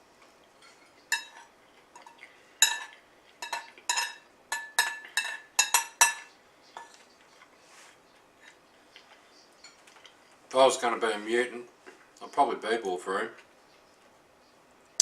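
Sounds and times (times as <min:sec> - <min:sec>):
cutlery clinking against dish: 0:00.6 - 0:07.5, 0:09.6 - 0:10.1.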